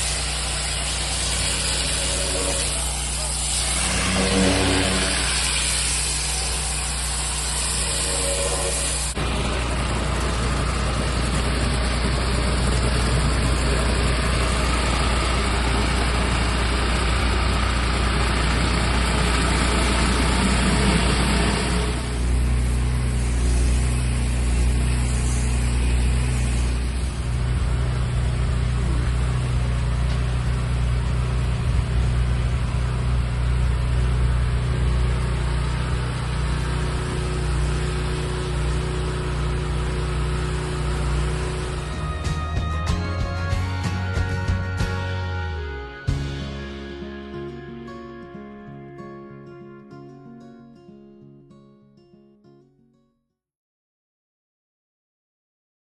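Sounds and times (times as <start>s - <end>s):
pressure washer spray hiss: 0.0s - 9.2s, 20.0s - 27.4s
pressure washer engine running: 0.0s - 44.6s.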